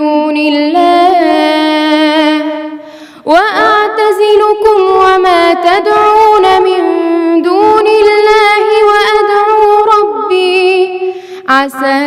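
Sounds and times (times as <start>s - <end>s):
short breath: 2.8s - 3.3s, 11.1s - 11.5s.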